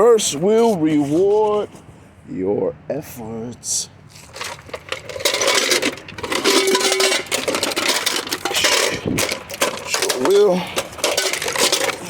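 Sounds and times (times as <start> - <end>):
metal scrap clinking and rattling: 4.1 - 12.0.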